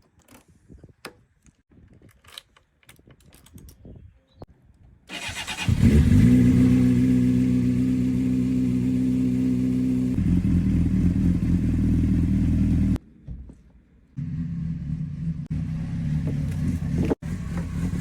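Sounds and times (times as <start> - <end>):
motorcycle engine running: 5.7 - 13.0, 14.2 - 18.0.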